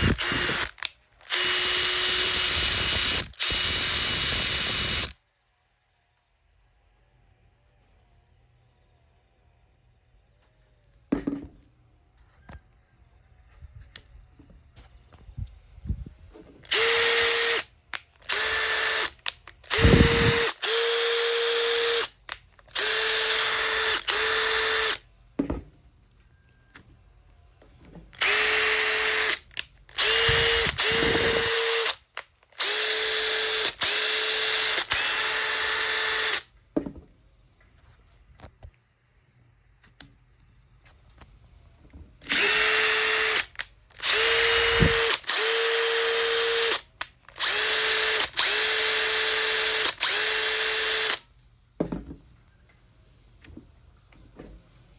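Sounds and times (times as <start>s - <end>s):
impact driver motor whine: 0.0s - 5.1s, 16.7s - 17.6s, 18.3s - 19.1s, 19.7s - 22.1s, 22.8s - 25.0s, 28.2s - 29.4s, 30.0s - 32.0s, 32.6s - 36.4s, 42.2s - 46.8s, 47.4s - 51.2s.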